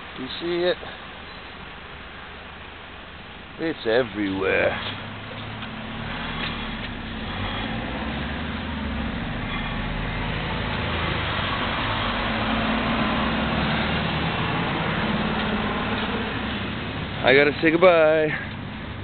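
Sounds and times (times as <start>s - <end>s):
vehicle engine humming: 0.0s - 19.0s.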